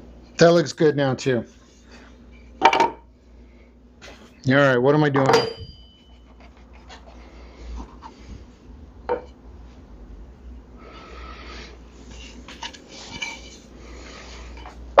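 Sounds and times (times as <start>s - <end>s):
low steady hum: 0.0s - 15.0s
wooden pieces rubbed on bench: 6.3s - 8.6s, 10.8s - 14.8s.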